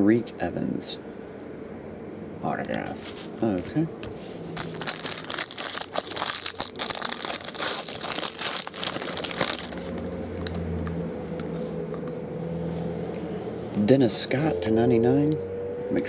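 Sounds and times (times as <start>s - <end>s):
steady low hum: 0.0s - 16.0s
wrapper crinkling and tearing: 4.6s - 10.9s.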